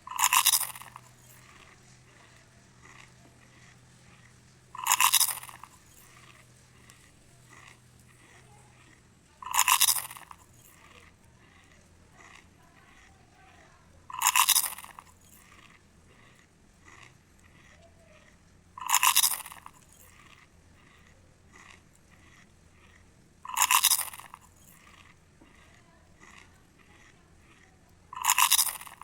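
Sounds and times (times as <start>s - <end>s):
soft regular chewing: 0.0s - 29.0s
loud crunches of crispy food: 14.1s - 15.0s, 18.8s - 19.9s, 23.5s - 24.4s, 28.2s - 29.0s.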